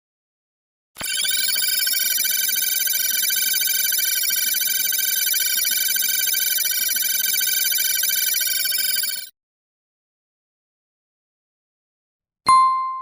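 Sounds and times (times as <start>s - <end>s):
electric bell ringing: 1.0s - 9.3s.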